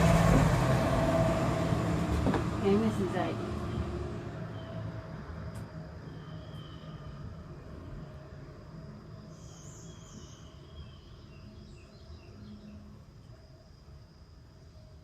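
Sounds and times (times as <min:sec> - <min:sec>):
high insect drone: 0:00.0 - 0:15.0
bird chirps: 0:06.0 - 0:07.4, 0:09.2 - 0:13.0.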